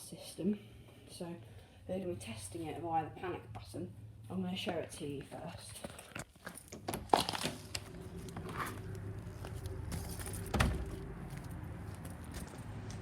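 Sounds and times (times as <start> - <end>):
low steady hum: 6.8 - 13.0.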